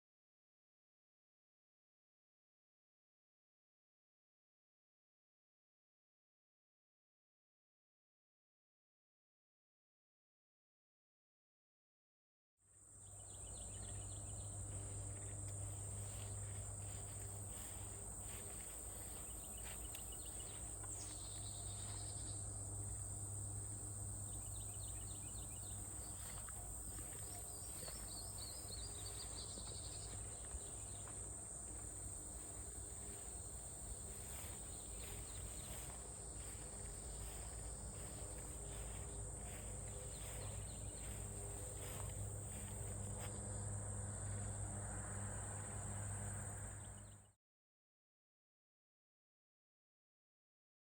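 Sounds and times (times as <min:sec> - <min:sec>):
insects droning: 0:12.8 - 0:47.3.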